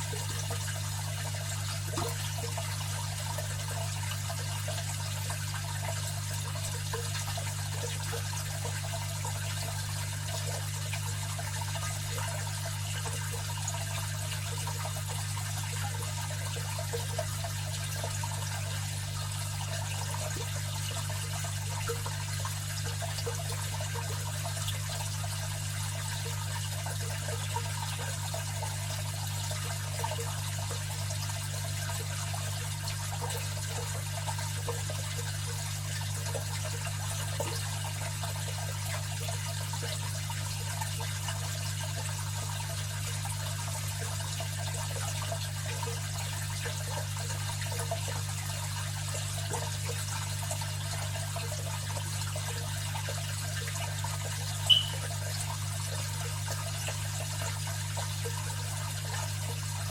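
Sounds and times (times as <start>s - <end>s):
aquarium pump hum: 0.0s - 59.9s
water trickling and splashing: 0.0s - 59.9s
high-pitched blip: 54.7s - 55.0s.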